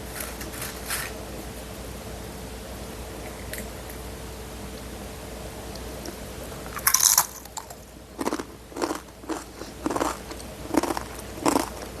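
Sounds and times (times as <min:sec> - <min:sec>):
person crunching chips: 0:06.8 - 0:12.0.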